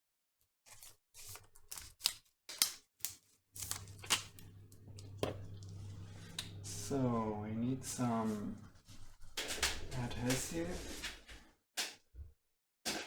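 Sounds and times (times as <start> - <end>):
low steady hum: 3.6 - 11.0.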